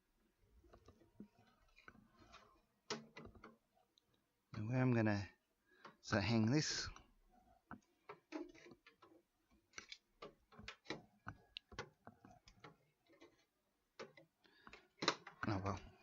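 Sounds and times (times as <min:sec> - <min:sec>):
clicks and taps of computer hardware: 0:01.8 - 0:03.6, 0:07.7 - 0:16.0.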